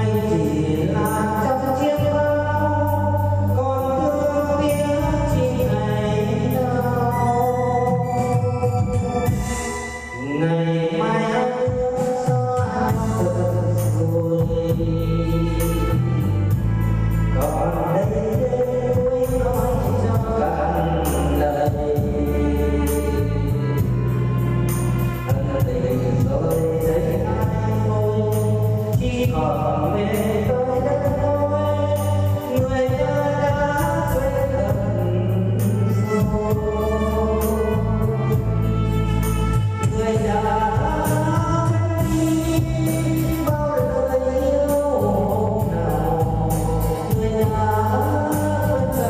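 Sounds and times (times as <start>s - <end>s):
continuous bass: 0.0s - 49.0s
keyboard accompaniment: 0.0s - 49.0s
melodic lead line: 4.4s - 11.9s.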